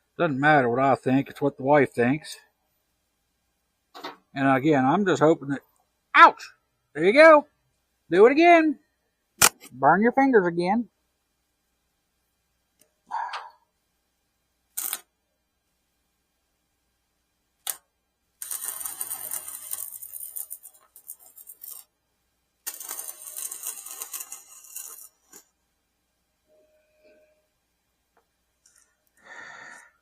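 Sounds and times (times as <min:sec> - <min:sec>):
electric welding arc crackling: 0:14.7 - 0:15.1, 0:18.4 - 0:21.9, 0:22.6 - 0:25.5.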